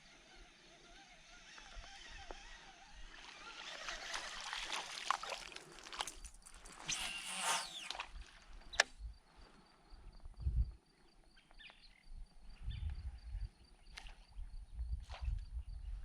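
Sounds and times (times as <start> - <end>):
paddle splashing water: 3.2 - 6.1
wind rumbling on microphone: 10.0 - 10.8, 12.0 - 16.0.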